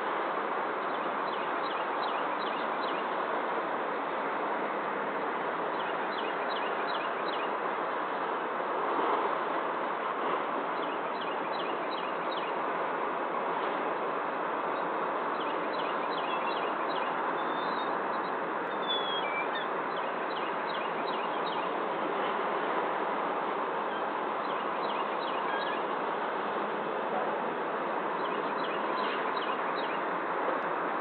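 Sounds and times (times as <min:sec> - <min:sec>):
birds chirping: 0:23.9 - 0:26.0.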